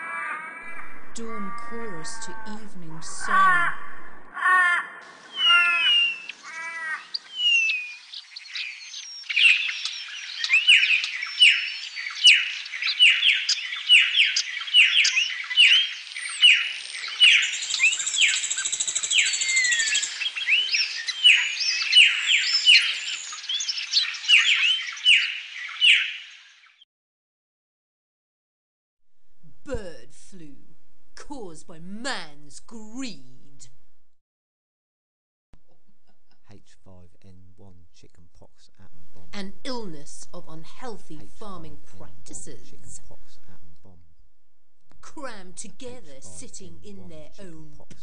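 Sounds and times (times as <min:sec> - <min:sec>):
high buzzy bird trill: 0:00.7 - 0:26.5
songbirds chorus: 0:04.8 - 0:26.8.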